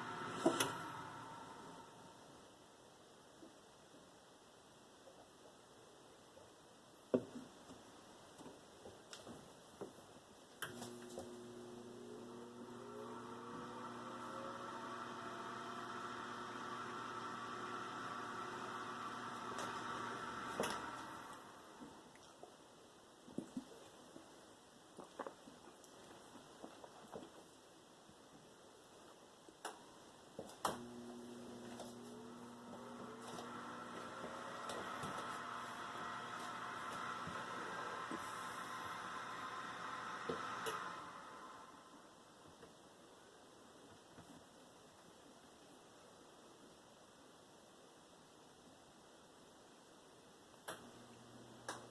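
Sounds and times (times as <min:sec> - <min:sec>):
relay clicking: 0:00.0 - 0:02.0
oven fan humming and whining: 0:00.0 - 0:02.3, 0:10.7 - 0:22.0, 0:30.7 - 0:42.0.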